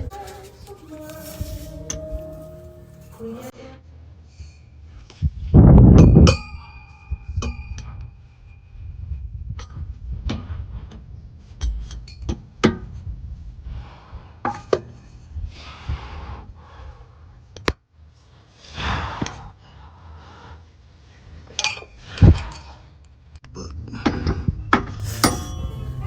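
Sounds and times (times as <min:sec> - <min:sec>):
brief metal scraping: 0:00.0 - 0:03.5, 0:25.0 - 0:26.0.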